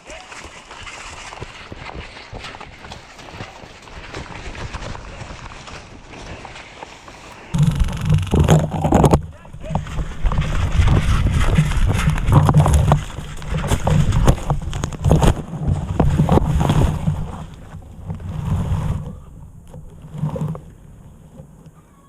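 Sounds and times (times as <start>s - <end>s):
wind buffeting microphone: 7.4s - 21.8s
knocks and clatter of movement: 7.5s - 21.8s.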